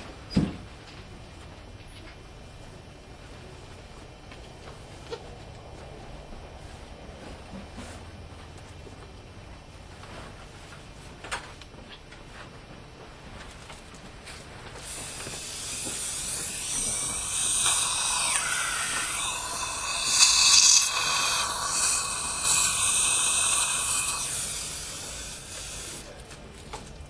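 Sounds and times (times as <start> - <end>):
rushing hiss: 14.8 - 26.2.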